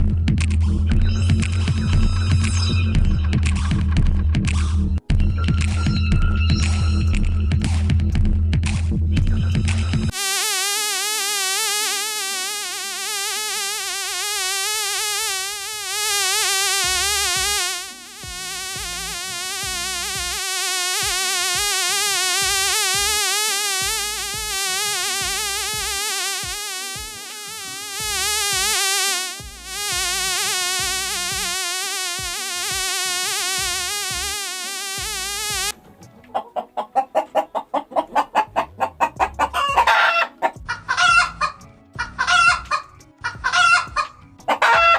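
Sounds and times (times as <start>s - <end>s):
electronic warbling tone: 10.1s - 35.8s
low pulsing beat: 11.8s - 35.7s
chicken clucking: 36.1s - 41.3s, 43.4s - 44.9s.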